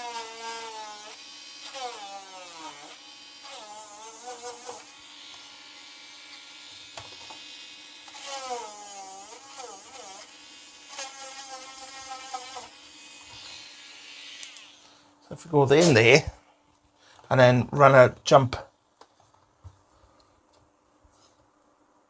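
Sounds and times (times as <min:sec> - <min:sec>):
small electric drill whining: 0:00.0 - 0:15.0.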